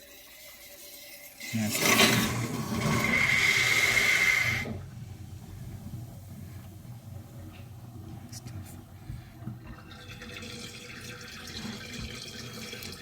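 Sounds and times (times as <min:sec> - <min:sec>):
water rushing out of a hose: 0:01.4 - 0:05.0.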